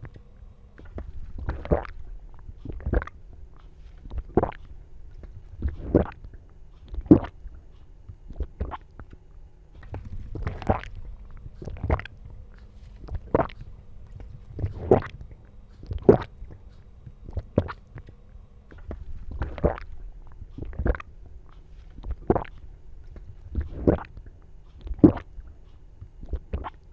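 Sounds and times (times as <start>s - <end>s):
low rumble: 0.0s - 6.4s, 9.8s - 25.4s.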